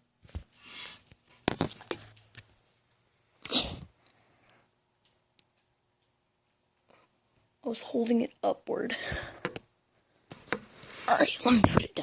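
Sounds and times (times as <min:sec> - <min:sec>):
rustling: 0:10.3 - 0:11.8.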